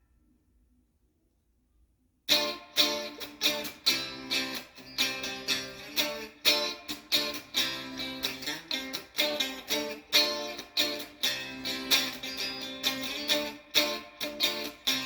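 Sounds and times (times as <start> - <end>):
clean electric guitar chords strummed: 2.3 - 15.0.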